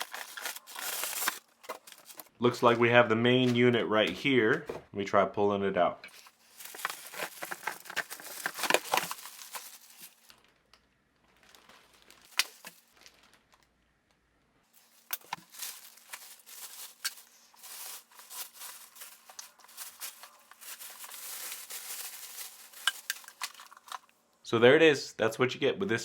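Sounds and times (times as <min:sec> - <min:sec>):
packaging rustling and crinkling: 0:00.0 - 0:02.4, 0:06.1 - 0:13.7, 0:14.7 - 0:24.1.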